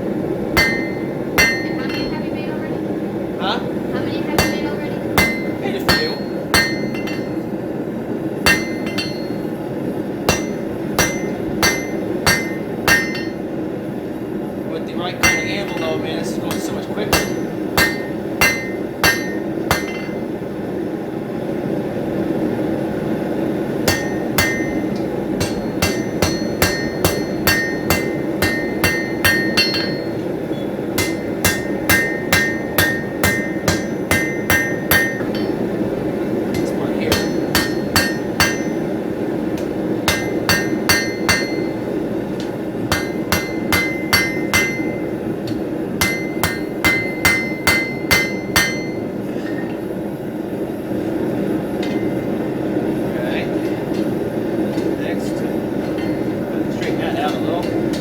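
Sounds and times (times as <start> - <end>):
hammer ringing on anvil: 0.6 - 2.3, 4.3 - 7.6, 8.4 - 9.7, 10.3 - 13.6, 15.2 - 20.4, 23.8 - 35.8, 36.5 - 49.9, 51.7 - 52.5, 55.8 - 58.0.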